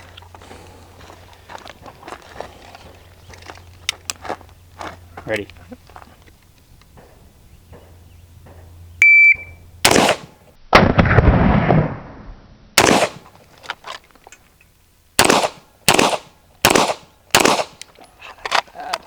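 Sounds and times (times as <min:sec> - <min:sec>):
shot timer beep: 0:09.0 - 0:09.6
pistol shots: 0:09.8 - 0:11.3, 0:12.8 - 0:13.3, 0:15.2 - 0:17.8
rifle shots: 0:09.8 - 0:12.0, 0:12.8 - 0:13.3, 0:15.2 - 0:17.8.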